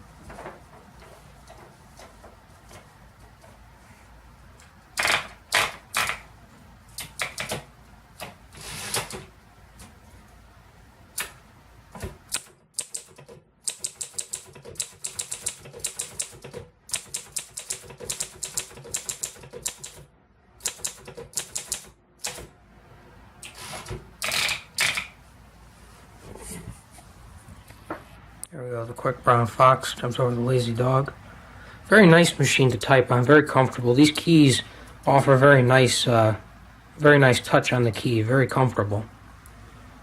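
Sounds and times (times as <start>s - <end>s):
typewriter mechanism strikes: 5.0s - 6.2s, 12.3s - 22.5s, 24.2s - 25.1s
typewriter key clacks: 12.4s - 20.0s, 20.6s - 22.4s, 24.2s - 25.1s.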